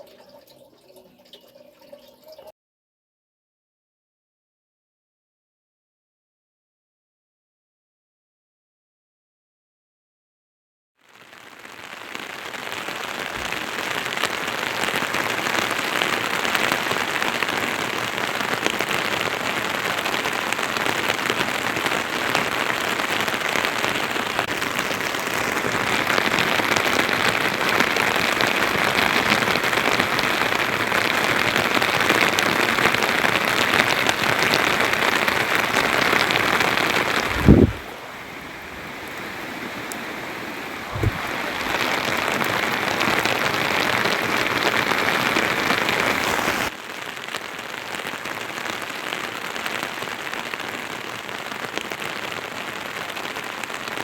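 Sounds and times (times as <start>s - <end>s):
heavy rain falling: 11.0s - 54.0s
low thump: 37.3s - 37.9s, 40.9s - 41.4s.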